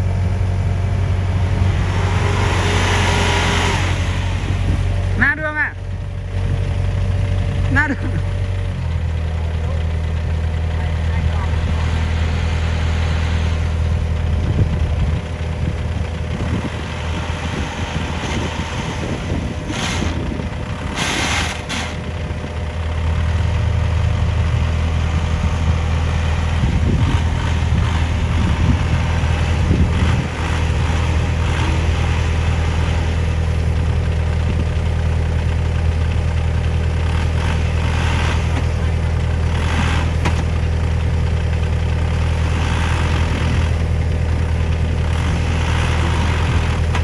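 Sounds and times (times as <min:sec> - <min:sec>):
heavy diesel engine running: 0:00.0 - 0:47.0.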